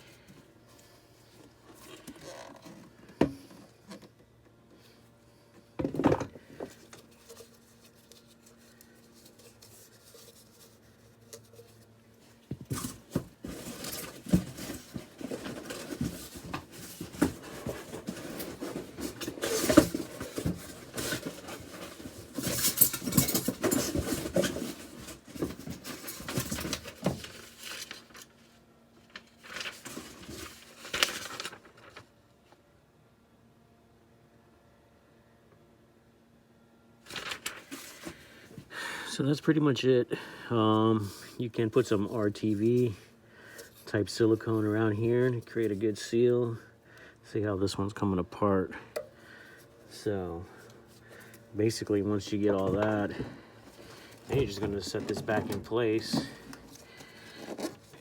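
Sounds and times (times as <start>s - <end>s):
metal parts clattering and scraping: 12.7s - 28.1s, 52.4s - 58.0s.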